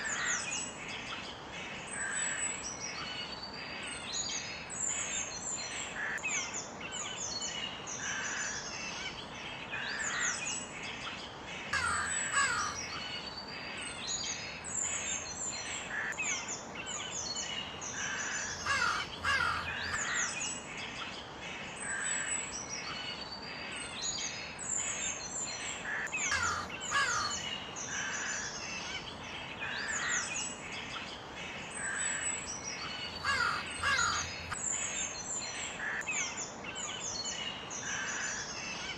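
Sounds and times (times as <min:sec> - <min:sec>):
crows cawing: 0:00.0 - 0:00.5, 0:06.0 - 0:06.2, 0:11.7 - 0:13.0, 0:15.9 - 0:16.2, 0:17.9 - 0:20.4, 0:25.9 - 0:28.6, 0:29.6 - 0:30.3, 0:33.2 - 0:34.6, 0:35.8 - 0:36.1
small birds chirping: 0:00.0 - 0:38.9.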